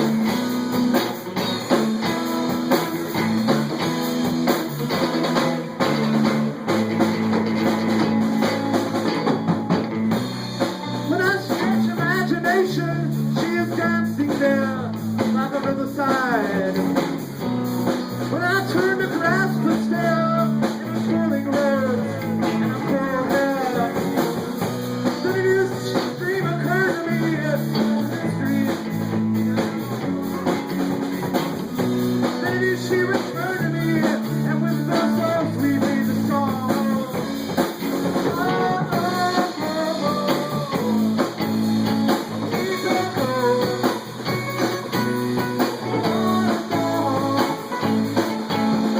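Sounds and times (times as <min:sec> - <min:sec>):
live band playing: 0:00.0 - 0:48.9.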